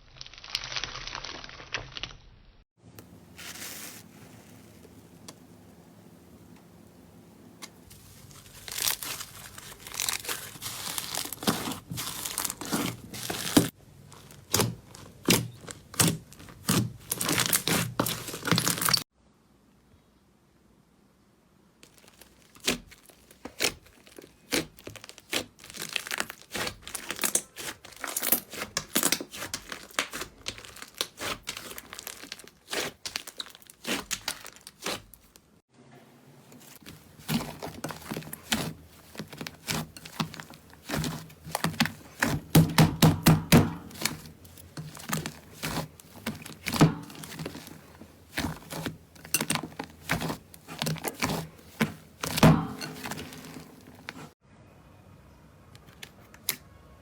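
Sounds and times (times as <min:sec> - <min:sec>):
slime crackling and popping: 0:00.0 - 0:02.5, 0:07.9 - 0:19.0, 0:21.8 - 0:35.4, 0:36.7 - 0:54.4.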